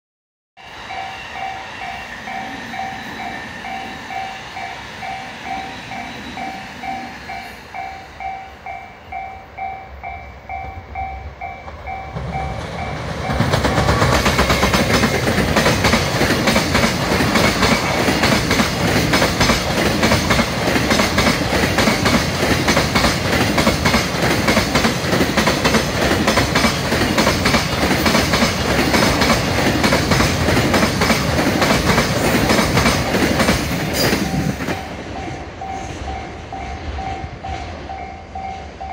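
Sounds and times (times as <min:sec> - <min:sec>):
freight train wheels clattering: 0:11.6 - 0:38.1.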